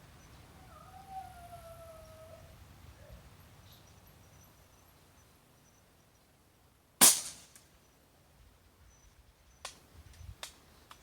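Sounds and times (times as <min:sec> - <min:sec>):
air rifle shot: 0:07.0 - 0:07.6.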